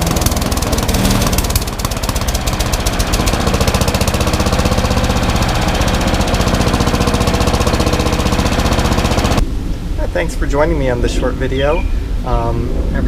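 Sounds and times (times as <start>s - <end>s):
chipper shredder engine running: 0.0s - 9.4s.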